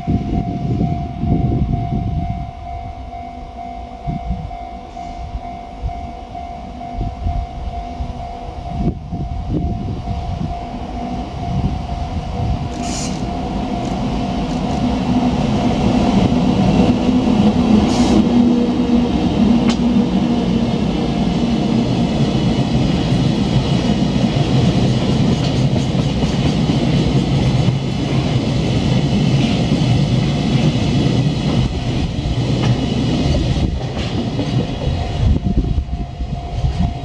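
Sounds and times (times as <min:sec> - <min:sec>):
train wheels rumbling on rail: 0:00.0 - 0:37.0.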